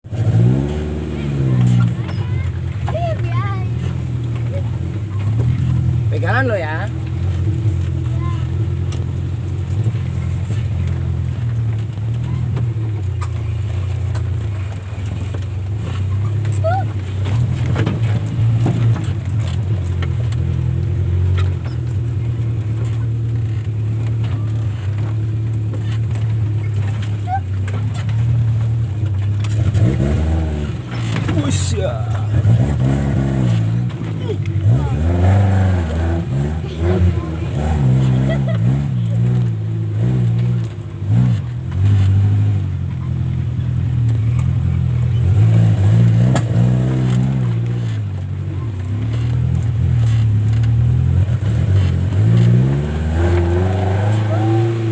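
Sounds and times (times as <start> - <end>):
vehicle engine running: 0.0 - 54.9
knocks and rattles: 6.9 - 53.8.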